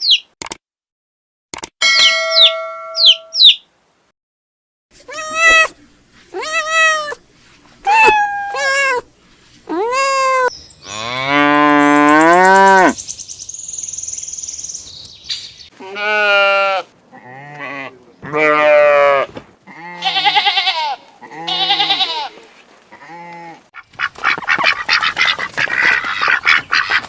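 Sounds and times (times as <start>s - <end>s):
high chirps: 1.8s - 3.7s
cat meowing: 5.1s - 5.8s, 6.4s - 7.2s, 7.8s - 9.1s
cow mooing: 10.9s - 13.0s.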